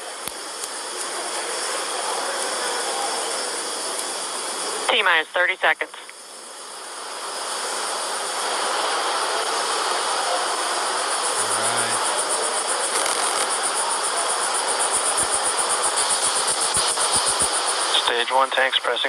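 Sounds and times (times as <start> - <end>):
insects chirping: 0.0 - 10.2, 10.8 - 19.0
outdoor ambient hiss: 0.0 - 19.0
fast high insect calls: 11.0 - 18.0.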